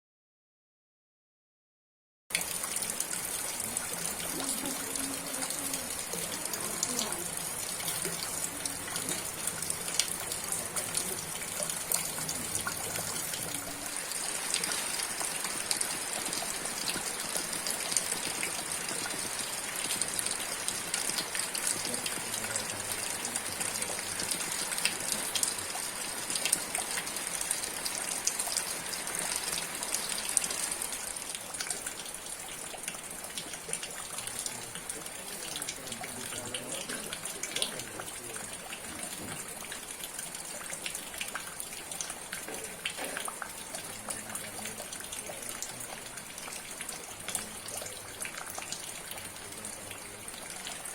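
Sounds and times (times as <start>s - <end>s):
rain hissing: 2.3s - 50.9s
rain drop taps: 32.7s - 50.8s.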